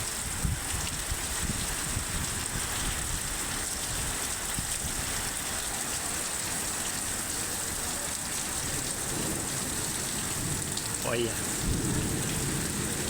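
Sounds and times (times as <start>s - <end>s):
heavy rain pouring: 0.0s - 13.0s
low gusty rumbles: 9.1s - 13.0s.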